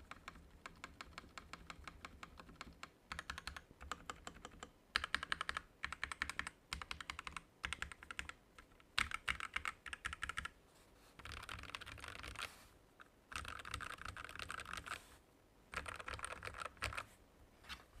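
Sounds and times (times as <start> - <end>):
typing on mechanical keyboard: 0.0 - 10.5, 11.2 - 12.5, 13.3 - 15.0, 15.7 - 17.1.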